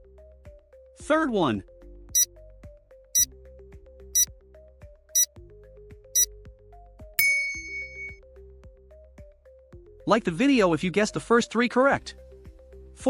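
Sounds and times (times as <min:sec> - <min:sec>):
light background music: 0:01.4 - 0:13.0
bright bell-like chime: 0:07.2 - 0:08.2
high countdown ticks: 0:07.2 - 0:08.2.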